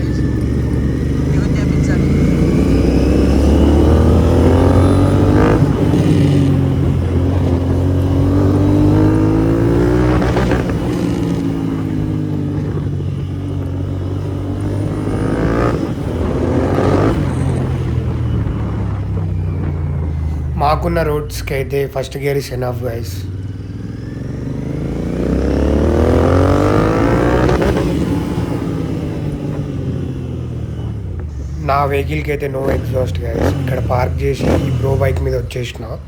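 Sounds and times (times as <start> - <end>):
motorcycle engine accelerating: 0.0 - 36.0.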